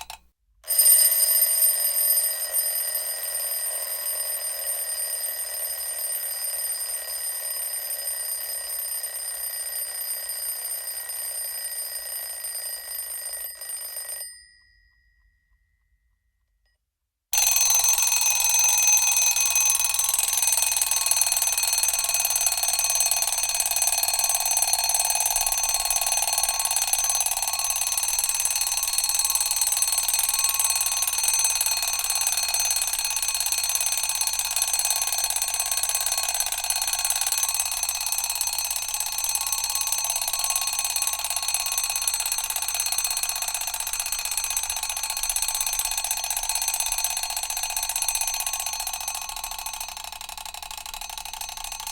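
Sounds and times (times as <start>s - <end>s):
alarm clock bell ringing: 0.0s - 16.0s, 17.4s - 51.9s.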